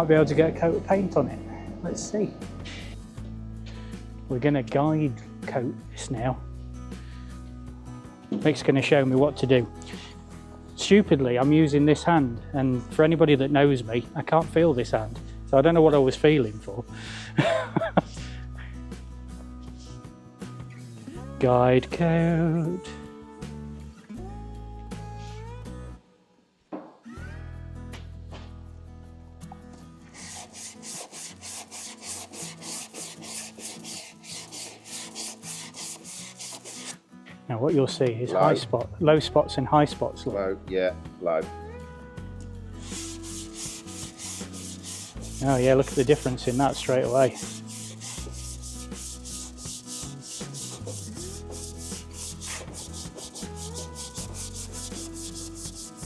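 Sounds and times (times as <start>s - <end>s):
guitar music: 0.0s - 4.6s, 42.4s - 56.0s
sandpaper rubbing back and forth: 30.1s - 37.0s, 42.8s - 56.0s.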